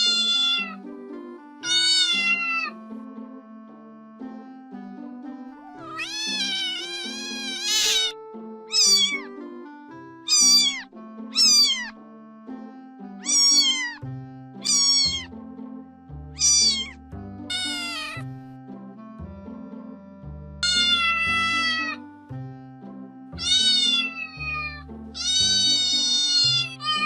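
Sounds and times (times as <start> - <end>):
cat meowing: 0.0 - 0.8, 1.6 - 2.8, 5.7 - 9.4, 10.3 - 12.0, 13.2 - 14.0, 14.6 - 15.3, 16.4 - 18.2, 20.6 - 22.0, 23.4 - 27.0
background music: 0.0 - 27.0.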